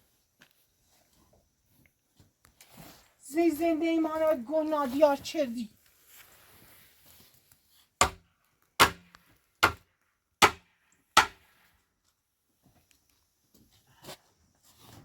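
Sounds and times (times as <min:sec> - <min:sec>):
sharp knocks: 0:08.8 - 0:09.8, 0:10.4 - 0:10.6, 0:11.2 - 0:11.4.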